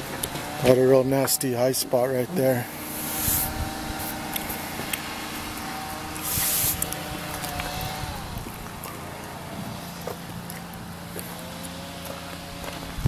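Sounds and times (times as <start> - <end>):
steady low hum: 0.0 - 13.0
spray hiss: 2.7 - 5.3, 6.2 - 6.9.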